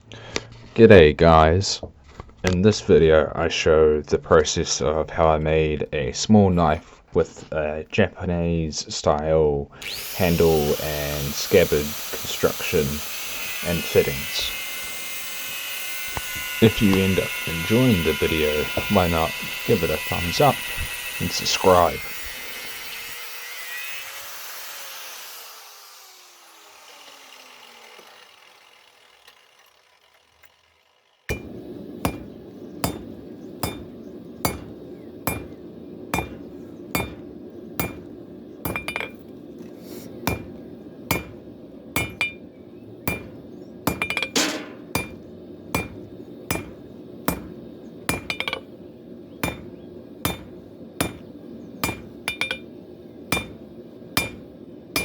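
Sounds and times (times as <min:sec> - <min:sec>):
whirring machine: 0:09.8 - 0:23.2
hammer ringing on anvil: 0:31.3 - 0:35.6, 0:36.2 - 0:37.2, 0:37.8 - 0:38.1, 0:38.7 - 0:39.2, 0:40.3 - 0:40.5, 0:41.1 - 0:41.4, 0:42.0 - 0:42.5, 0:43.1 - 0:45.2, 0:45.8 - 0:48.7, 0:49.4 - 0:51.2, 0:51.8 - 0:52.7, 0:53.3 - 0:53.6, 0:54.2 - 0:54.4.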